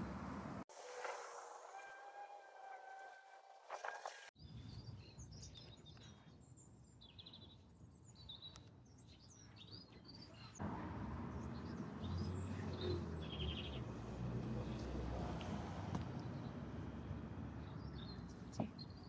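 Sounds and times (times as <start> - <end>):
small songbirds chirping: 4.4 - 10.6, 11.2 - 19.0.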